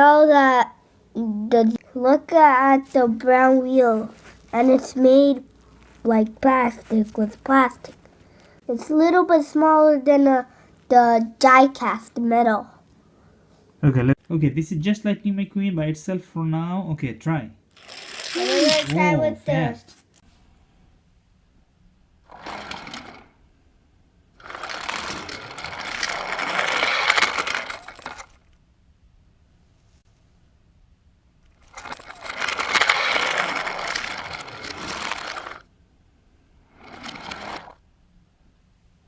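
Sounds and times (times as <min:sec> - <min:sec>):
toy car running on track: 0:17.8 - 0:19.0, 0:22.3 - 0:23.3, 0:24.4 - 0:28.4, 0:31.6 - 0:35.6, 0:36.7 - 0:37.8.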